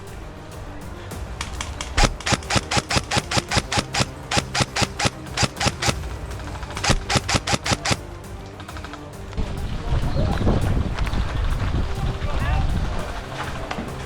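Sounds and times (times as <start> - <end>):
airsoft gun rapid shots: 1.4 - 8.0.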